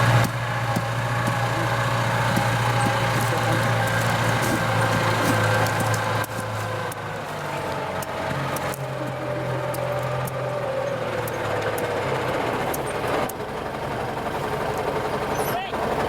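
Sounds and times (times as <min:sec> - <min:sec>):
tractor diesel engine running: 0:00.0 - 0:16.0
sharp clicks: 0:08.0 - 0:10.6.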